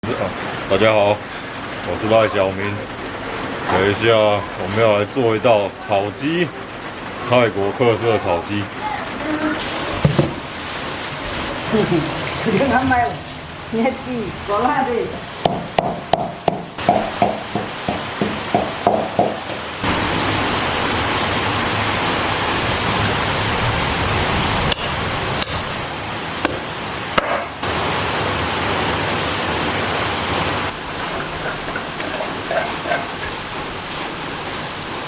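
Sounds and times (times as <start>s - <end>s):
steady rushing hiss: 30.4s - 35.0s.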